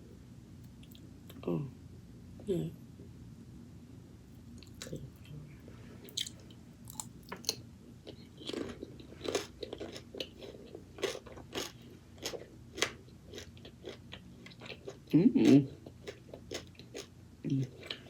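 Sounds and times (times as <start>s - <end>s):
person chewing crunchy food: 6.1s - 18.0s.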